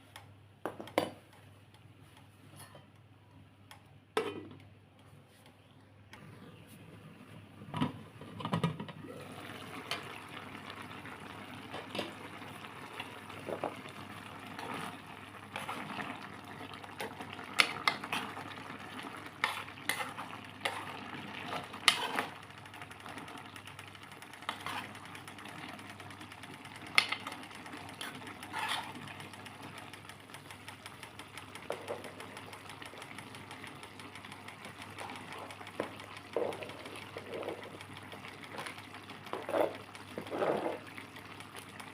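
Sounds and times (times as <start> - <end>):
chicken sizzling in a pan: 9.4 - 25.8
utensil tapping and scraping pan: 19.4 - 20.9, 21.5 - 22.3, 24.4 - 24.9, 28.0 - 29.0.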